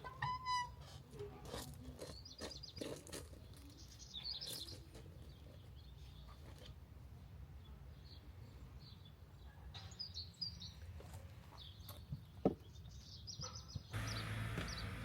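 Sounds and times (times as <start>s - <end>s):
small birds chirping: 2.1s - 6.4s, 11.5s - 15.0s
low outdoor rumble: 14.0s - 15.0s.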